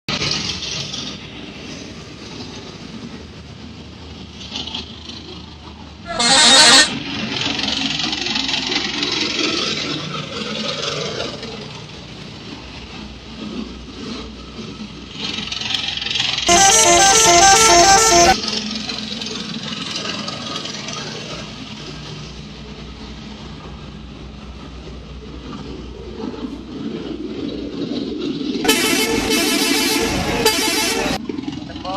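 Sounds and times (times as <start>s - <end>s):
street traffic noise: 0.1s - 31.9s
musical air horn: 6.1s - 6.9s, 16.5s - 18.4s, 28.6s - 31.2s.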